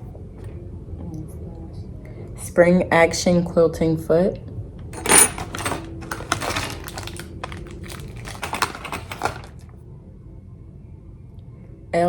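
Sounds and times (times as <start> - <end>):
packaging clicks and crinkles: 5.0 - 9.7.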